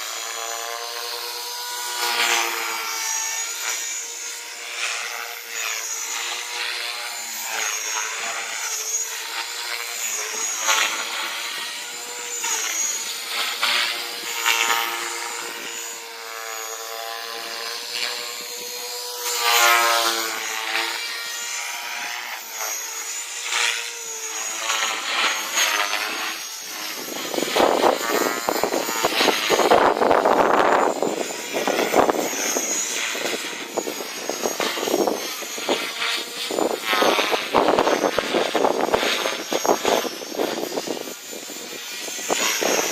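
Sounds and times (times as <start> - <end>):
small engine buzzing: 0.0 - 42.9
wind buffeting microphone: 26.8 - 42.9.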